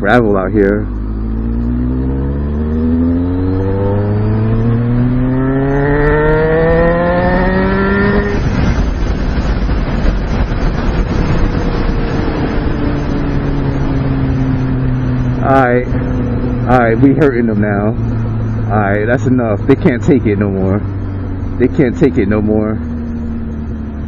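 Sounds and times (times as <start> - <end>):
motorcycle engine accelerating: 0.0 - 24.0
loud rushing noise: 1.0 - 17.0.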